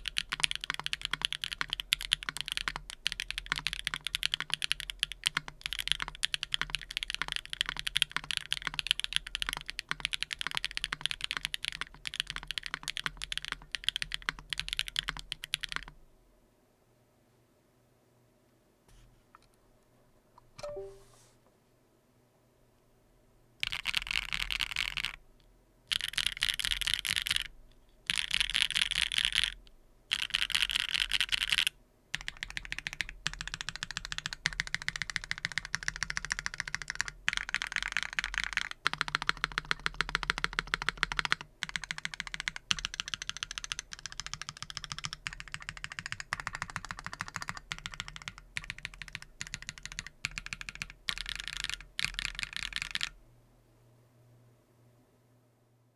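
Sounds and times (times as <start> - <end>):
mechanical keyboard typing: 0.0 - 16.0, 23.6 - 25.2, 25.9 - 27.5, 28.1 - 53.2.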